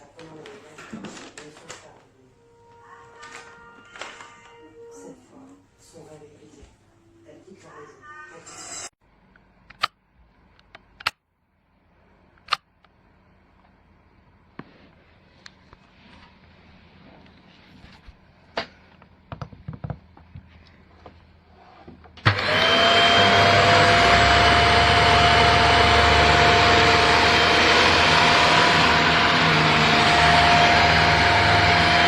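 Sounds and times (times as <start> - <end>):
vacuum cleaner running: 22.2 - 32.0.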